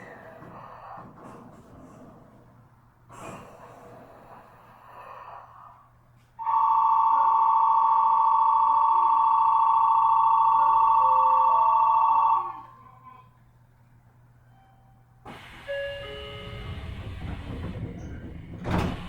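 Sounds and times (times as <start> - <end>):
electric bell ringing: 6.4 - 12.6, 15.7 - 17.0
knock: 17.1 - 19.0.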